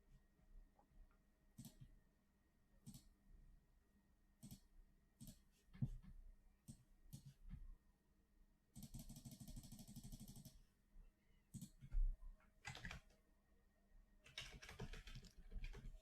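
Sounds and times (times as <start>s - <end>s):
keyboard and mouse clicking: 12.6s - 13.1s, 14.3s - 16.0s
keyboard typing: 12.6s - 13.1s, 14.2s - 16.0s.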